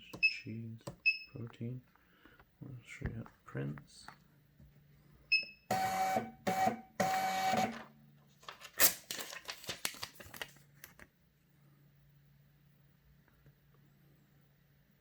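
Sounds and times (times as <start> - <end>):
label printer running: 5.7 - 7.8.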